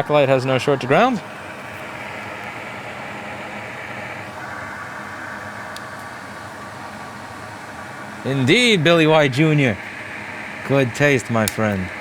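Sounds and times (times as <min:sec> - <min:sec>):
fan whooshing: 0:00.0 - 0:12.0
faint click: 0:11.4 - 0:11.7.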